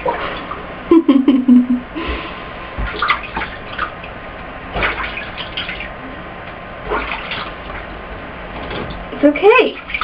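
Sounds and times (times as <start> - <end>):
water splashing in bathtub: 2.8 - 10.0.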